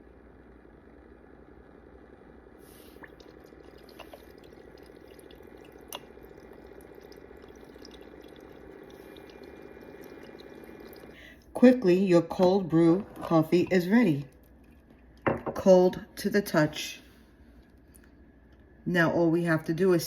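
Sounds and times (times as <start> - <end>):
coffee trickling into cup of ice: 2.7 - 15.1.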